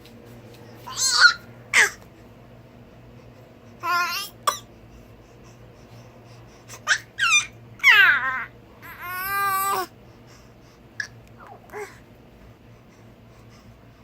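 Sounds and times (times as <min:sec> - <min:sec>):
baby squealing and cooing: 0:00.9 - 0:02.0, 0:06.8 - 0:09.8.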